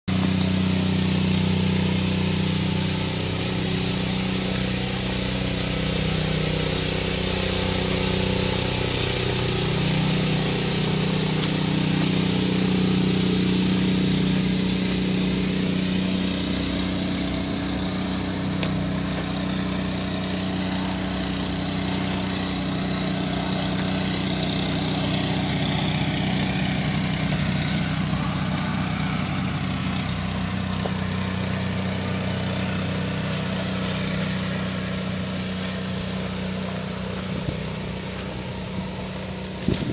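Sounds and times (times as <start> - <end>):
sprayer engine running: 0.0 - 39.9
loud rushing spray hiss: 0.2 - 29.6.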